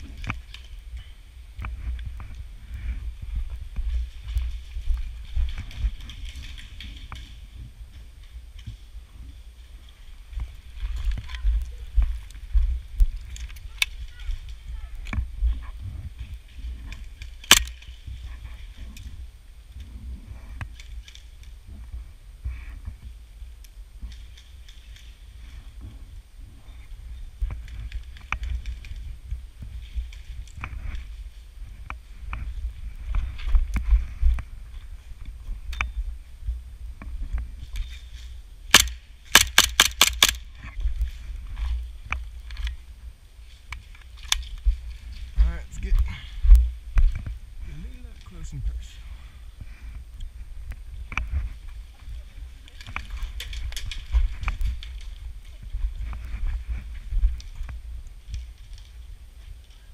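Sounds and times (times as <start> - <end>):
wind rumble on microphone: 0.0 - 39.4, 40.3 - 59.9
sharp snaps: 17.4 - 17.8, 38.7 - 40.4.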